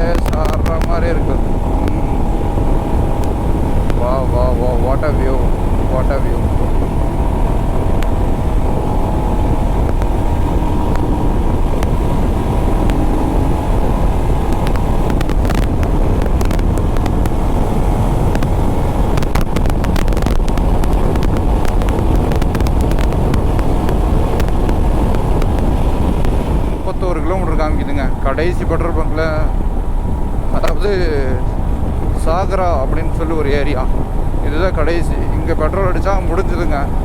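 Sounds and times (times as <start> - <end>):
crackling ticks: 0.0 - 2.3, 3.0 - 27.8, 30.5 - 30.9
motorcycle road noise: 0.0 - 37.0
wind rushing over microphone: 0.0 - 37.0.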